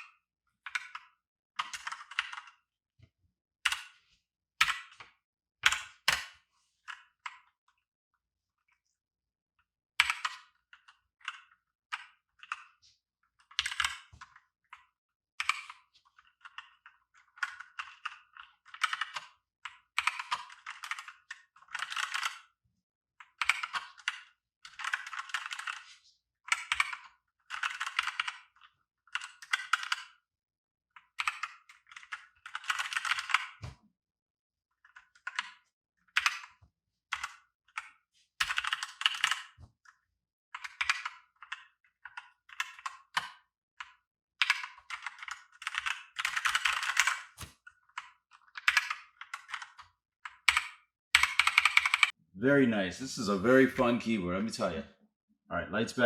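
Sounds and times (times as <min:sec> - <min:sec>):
mechanical keyboard typing: 0:23.4 - 0:25.8, 0:26.5 - 0:28.4, 0:31.2 - 0:33.5, 0:38.4 - 0:39.6, 0:40.6 - 0:41.2, 0:44.4 - 0:47.6, 0:48.6 - 0:52.2.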